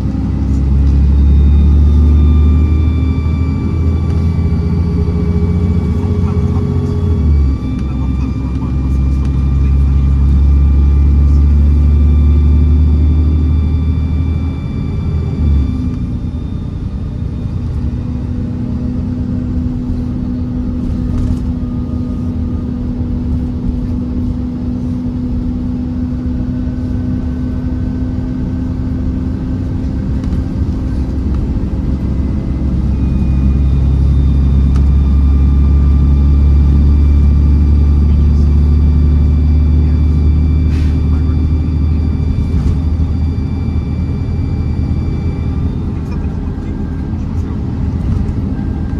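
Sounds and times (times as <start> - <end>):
bus engine rumbling: 0.0 - 48.9.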